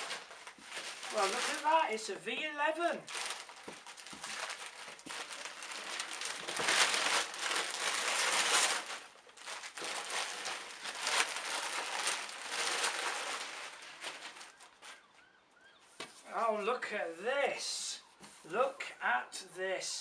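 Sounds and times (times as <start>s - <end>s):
wrapping paper tearing and crumpling: 0.0s - 2.1s, 3.0s - 15.0s.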